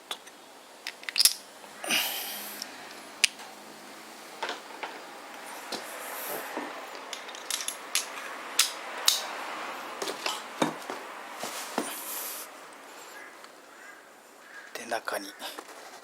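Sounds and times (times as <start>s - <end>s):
metal parts clicking and tapping: 0.1s - 1.4s, 6.9s - 9.2s.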